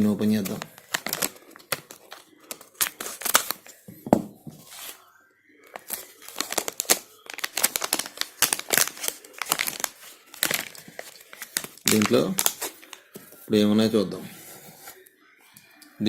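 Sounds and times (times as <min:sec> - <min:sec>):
plastic packet tearing and crinkling: 0:00.0 - 0:03.8, 0:05.7 - 0:13.1.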